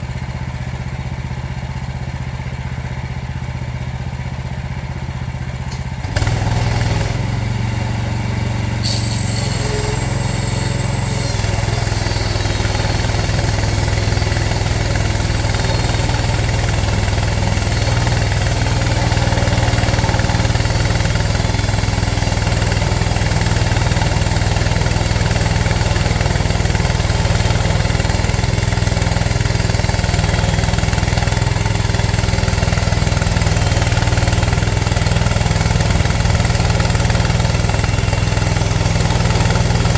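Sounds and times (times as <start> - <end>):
bandsaw mill engine droning: 0.0 - 39.9
hiss: 8.8 - 17.1.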